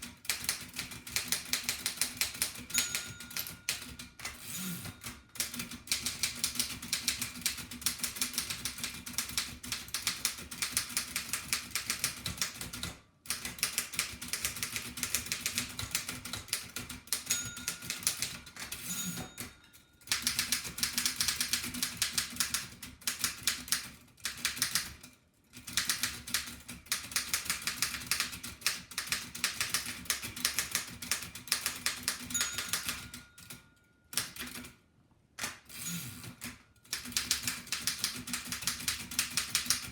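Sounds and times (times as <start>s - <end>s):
typewriter keys clacking: 0.0s - 33.6s, 35.4s - 39.9s.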